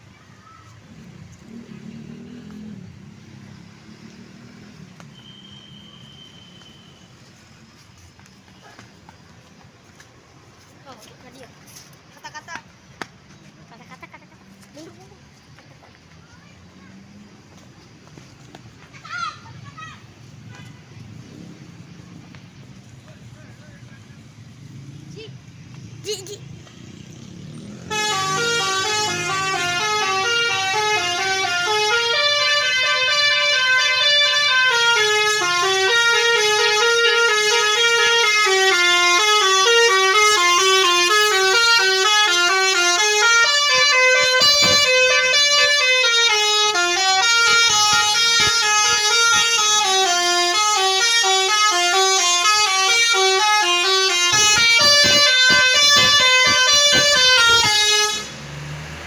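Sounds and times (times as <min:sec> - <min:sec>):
multi-tone bus horn tune: 0:27.6 - 0:58.7.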